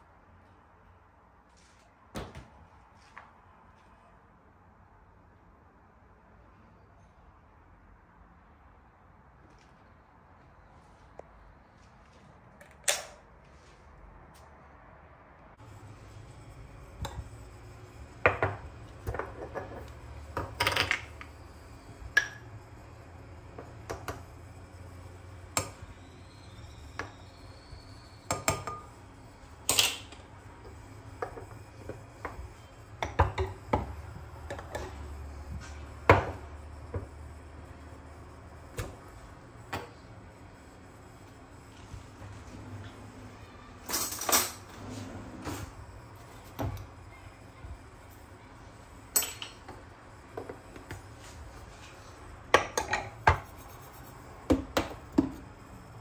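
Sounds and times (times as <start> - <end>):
steady low hum: 13.2 - 56.0
dishes clinking and clattering: 49.1 - 49.7.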